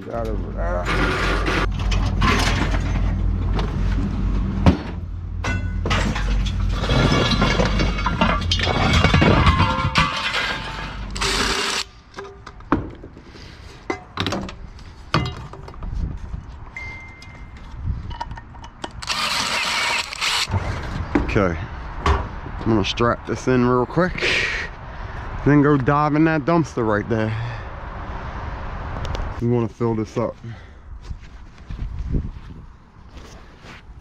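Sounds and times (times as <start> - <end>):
scrap metal clattering: 0.8 - 3.2, 5.4 - 12.4.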